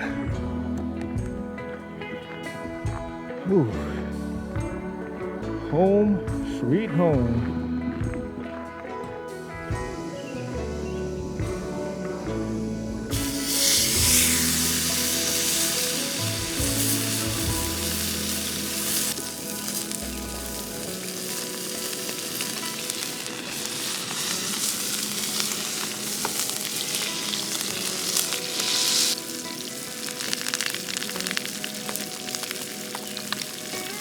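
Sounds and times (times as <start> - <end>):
background music: 0.0 - 34.0
steak sizzling in a pan: 13.1 - 34.0.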